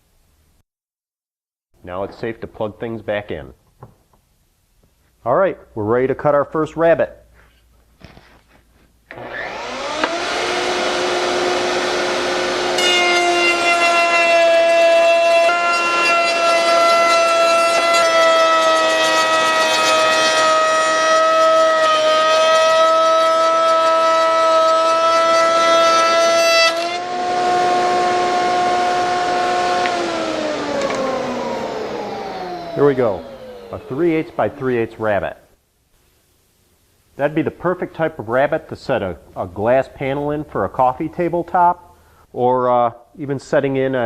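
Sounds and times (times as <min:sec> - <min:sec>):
dust extraction running: 0:09.1 - 0:14.0, 0:23.6 - 0:34.8
router motor whining: 0:09.1 - 0:34.6
steady whining tones: 0:27.0 - 0:34.9.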